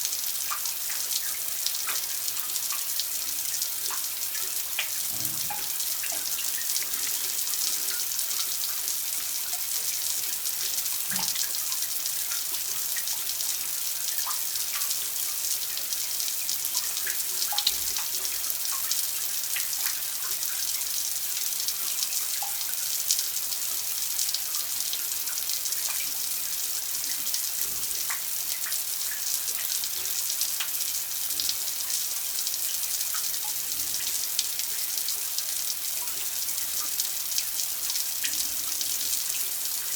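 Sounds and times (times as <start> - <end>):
water drips and plinks: 4.8 - 7.3.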